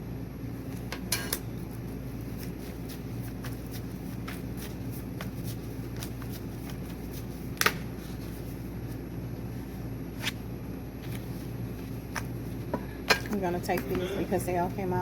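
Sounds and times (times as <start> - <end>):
steady low hum: 0.0 - 15.0
cards being shuffled: 1.6 - 9.0, 11.0 - 12.6
sharp card snaps: 7.6 - 7.8.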